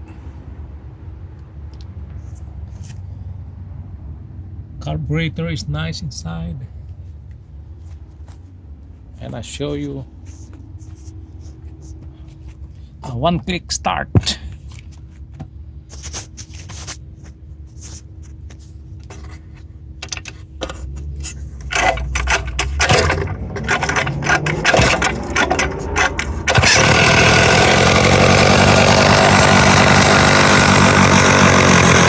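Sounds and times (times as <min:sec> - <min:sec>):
chainsaw handling clicks and scraping: 0:20.1 - 0:32.0
chainsaw engine running: 0:21.7 - 0:32.0.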